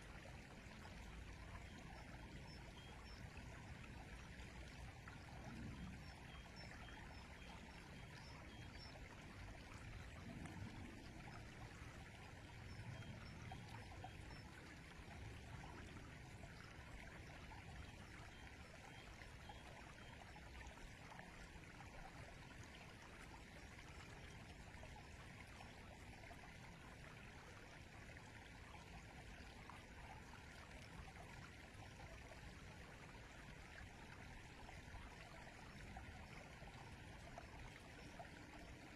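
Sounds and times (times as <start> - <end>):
river flowing: 0.0 - 38.9.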